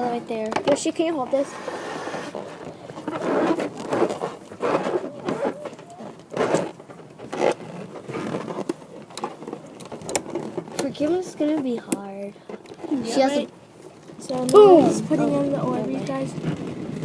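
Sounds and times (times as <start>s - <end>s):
hands rubbing rubber balloon: 0.0s - 11.8s
plastic bottle scraping: 0.0s - 17.0s.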